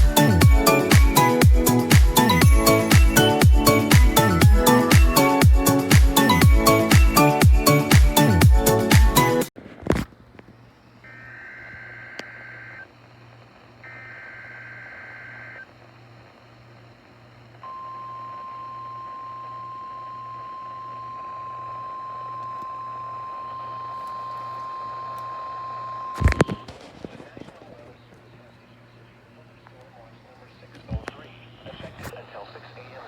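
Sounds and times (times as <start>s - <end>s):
faint pulsing hum: 0.0s - 33.0s
steady warning alarm tone: 11.0s - 12.9s, 13.8s - 15.7s, 17.6s - 26.2s.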